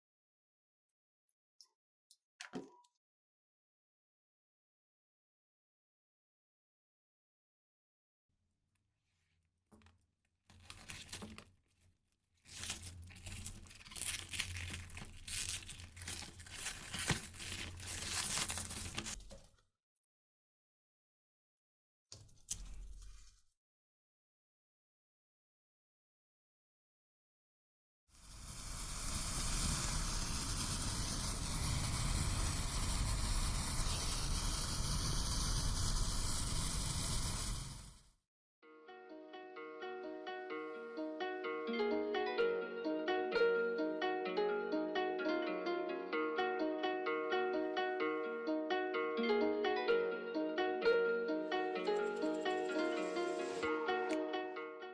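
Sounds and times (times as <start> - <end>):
firework crackling hiss: 28.2 - 38.0.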